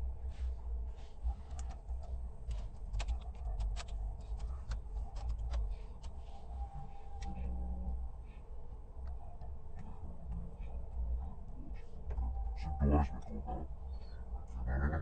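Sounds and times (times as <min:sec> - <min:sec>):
steady low rumble: 0:00.0 - 0:15.0.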